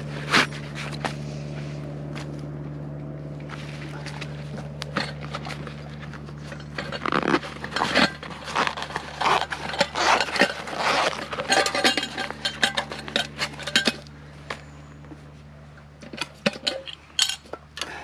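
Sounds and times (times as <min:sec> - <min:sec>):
metal cookware clinking and scraping: 0:08.9 - 0:14.0.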